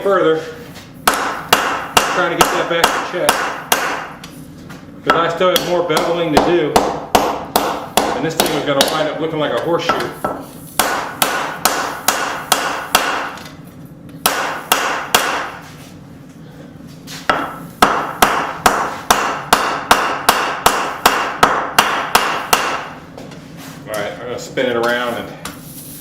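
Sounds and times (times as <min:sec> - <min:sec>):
hammer striking steel on anvil: 0:01.0 - 0:04.1, 0:05.1 - 0:09.1, 0:09.9 - 0:13.4, 0:14.2 - 0:15.6, 0:17.3 - 0:23.0.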